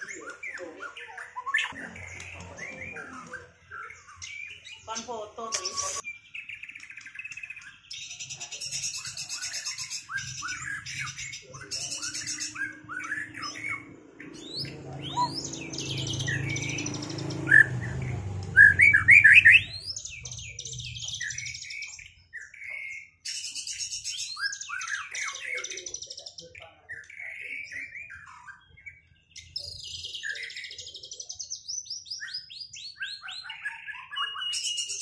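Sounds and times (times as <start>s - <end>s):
shamas singing whistled notes: 3.9s - 6.5s, 18.5s - 20.0s, 34.1s - 35.0s
low rumble: 14.3s - 21.0s.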